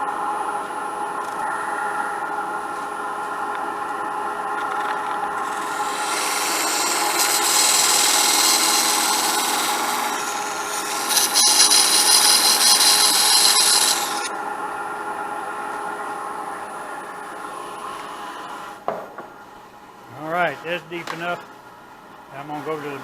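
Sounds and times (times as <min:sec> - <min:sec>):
lathe motor hum: 0:01.4 - 0:18.6
turning tool scraping wood: 0:04.7 - 0:14.3.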